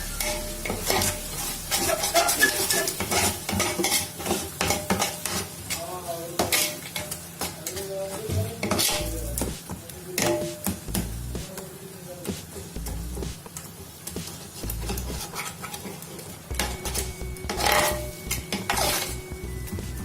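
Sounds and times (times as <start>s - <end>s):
sizzling pot: 0.0s - 20.0s
metal spoon scraping a pot: 0.1s - 5.8s, 8.6s - 9.2s, 14.8s - 19.2s.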